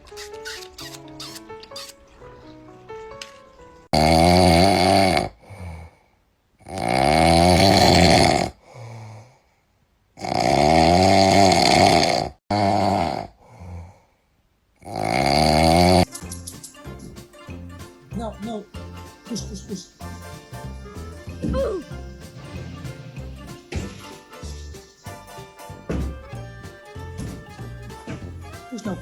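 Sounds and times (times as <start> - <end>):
animal snoring loudly: 3.9 - 5.8, 6.6 - 8.6, 10.2 - 13.4, 14.8 - 16.1
quiet breaths: 5.3 - 6.7, 8.5 - 10.0, 13.2 - 14.6.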